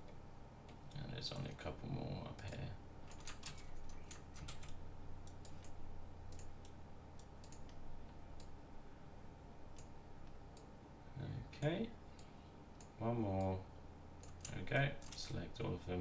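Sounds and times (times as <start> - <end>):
faint low hum: 0.0 - 16.0
mouse and keyboard clicks: 3.1 - 6.8.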